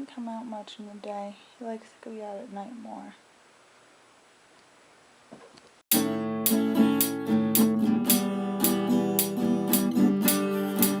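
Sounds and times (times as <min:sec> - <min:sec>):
strummed acoustic guitar: 0:05.9 - 0:11.0.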